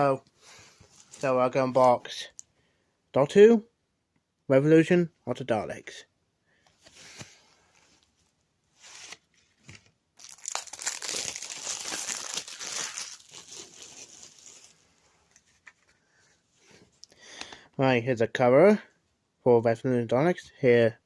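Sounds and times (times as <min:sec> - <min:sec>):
packaging tearing and crinkling: 0:10.2 - 0:14.8.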